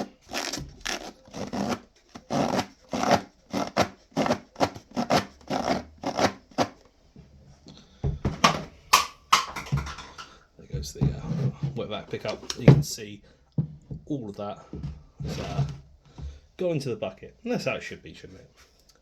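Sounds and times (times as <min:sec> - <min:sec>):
filter rasping across ribs: 0:00.0 - 0:06.9.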